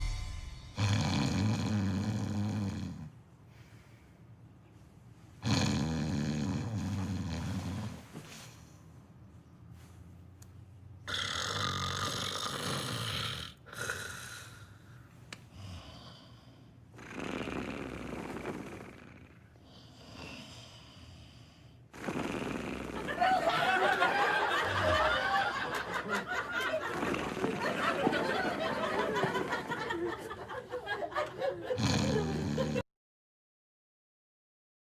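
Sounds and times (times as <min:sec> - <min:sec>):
person snoring: 0:00.8 - 0:03.1, 0:05.4 - 0:08.0, 0:11.1 - 0:14.9, 0:15.5 - 0:23.2, 0:31.8 - 0:32.8.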